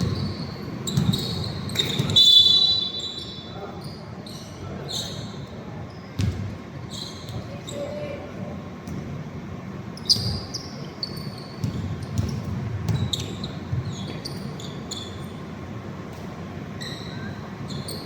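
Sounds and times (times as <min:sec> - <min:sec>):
basketball bouncing: 0:00.0 - 0:02.2, 0:06.2 - 0:06.5, 0:11.6 - 0:14.3
sneakers squeaking on floor: 0:00.0 - 0:08.2, 0:09.9 - 0:15.6, 0:16.2 - 0:18.0.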